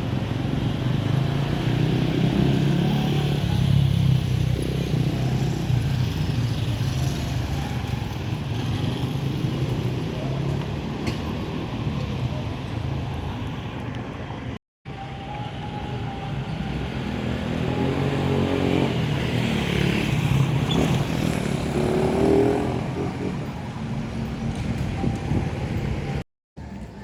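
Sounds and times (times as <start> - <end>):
street traffic engines: 0.0 - 27.0.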